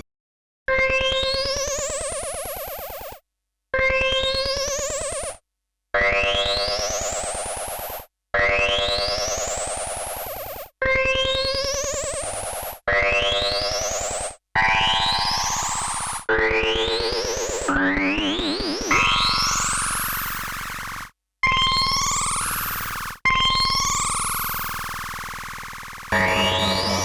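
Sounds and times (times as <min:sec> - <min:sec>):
buzzing synthesizer sweep: 0:26.1 - 0:27.0.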